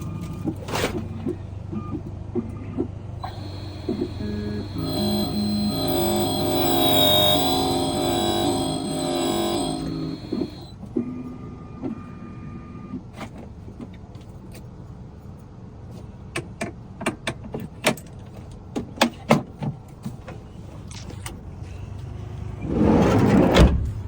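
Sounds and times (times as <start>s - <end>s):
low steady hum: 3.2s - 10.7s.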